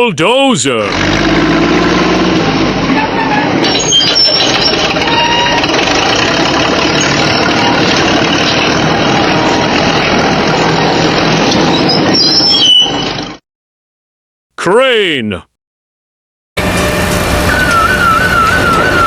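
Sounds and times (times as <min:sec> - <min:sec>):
bulldozer diesel engine running: 0:00.8 - 0:13.4, 0:16.6 - 0:19.0
high squeals: 0:03.0 - 0:13.4.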